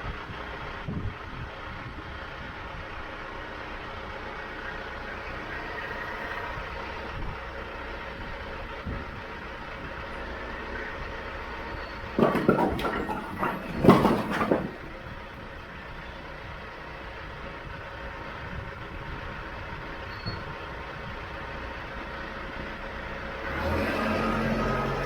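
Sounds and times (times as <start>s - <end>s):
clattering knocks: 12.1s - 15.2s.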